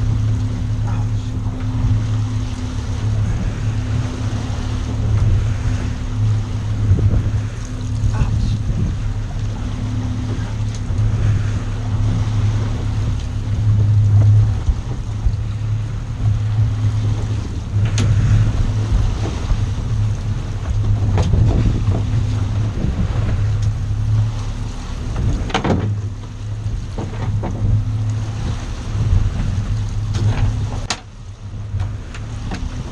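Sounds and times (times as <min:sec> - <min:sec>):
boat engine drone: 0:00.0 - 0:32.9
water noise: 0:00.0 - 0:32.9
wind on microphone: 0:00.0 - 0:32.9.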